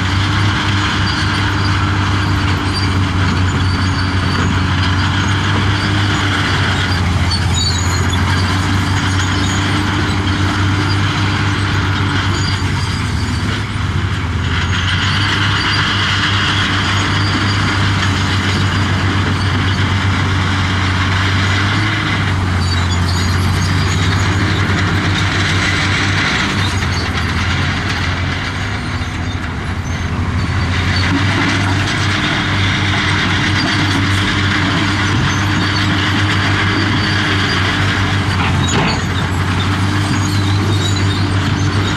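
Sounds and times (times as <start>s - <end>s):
diesel machinery engine drone: 0.0s - 41.9s.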